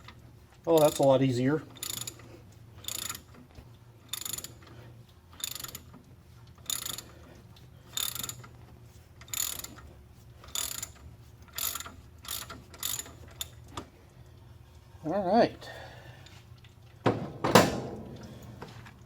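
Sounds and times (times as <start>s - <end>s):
hand ratchet clicking: 0.7s - 8.6s, 9.2s - 13.9s.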